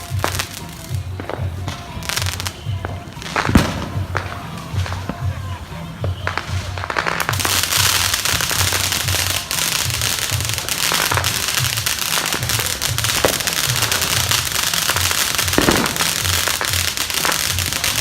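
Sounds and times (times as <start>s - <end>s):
fireworks bangs: 0.0s - 18.0s
fireworks crackling and popping: 0.0s - 18.0s.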